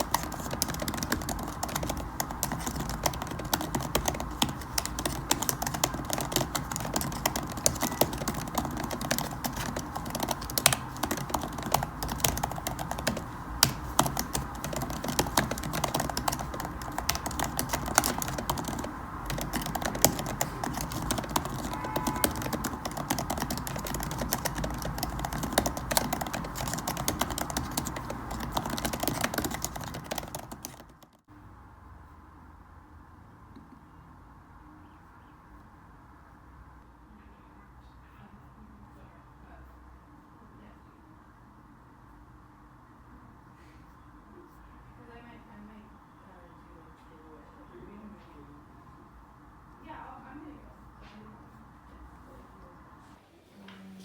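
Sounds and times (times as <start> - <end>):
typing on computer keyboard: 0.0 - 31.3.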